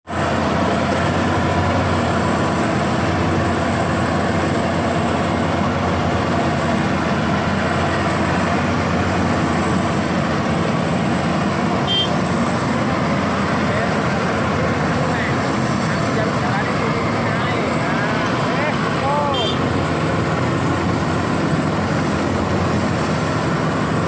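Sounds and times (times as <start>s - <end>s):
combine harvester running: 0.0s - 24.0s.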